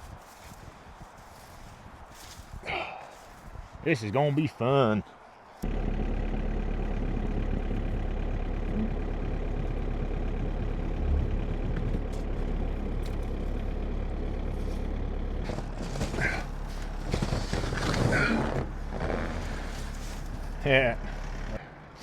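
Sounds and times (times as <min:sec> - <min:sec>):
rustling: 0:00.0 - 0:03.5, 0:14.5 - 0:21.2
diesel engine idling: 0:05.6 - 0:22.0.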